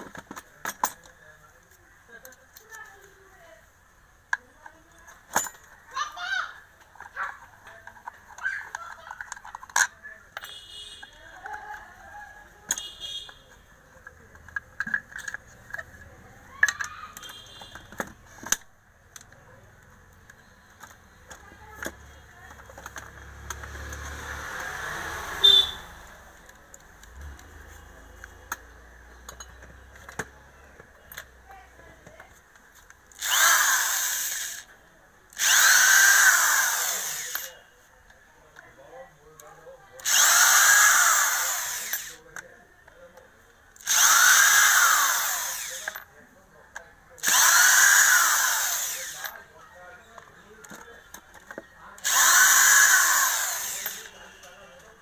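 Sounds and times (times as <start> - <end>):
handling clicks and knocks: 0.0 - 3.0, 6.8 - 12.0, 12.6 - 24.2, 26.4 - 33.1, 50.1 - 51.8
electric hand planer motor running: 33.2 - 34.6, 35.4 - 37.5, 40.0 - 42.1, 43.8 - 46.0, 47.2 - 49.3, 52.0 - 54.1.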